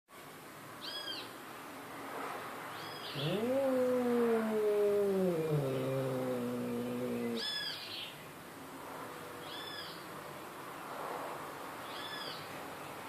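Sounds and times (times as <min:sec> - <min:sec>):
cat yowling: 0:03.1 - 0:07.6.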